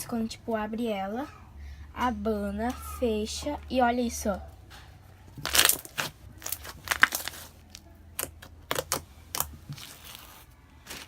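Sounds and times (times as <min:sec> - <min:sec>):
slime stretched by hand: 0:05.4 - 0:07.5.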